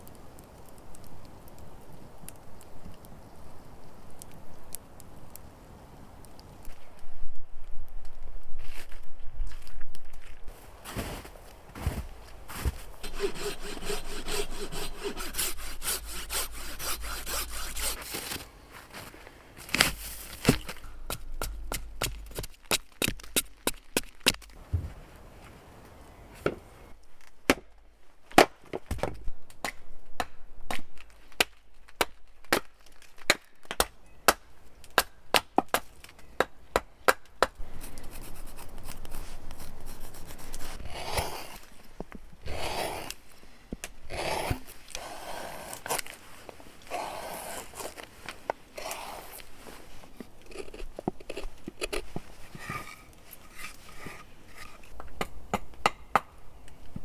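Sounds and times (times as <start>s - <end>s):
scraping cuts shaving wood: 11.8s - 25.0s, 37.6s - 41.8s, 42.4s - 43.2s, 44.1s - 46.2s, 46.8s - 56.0s.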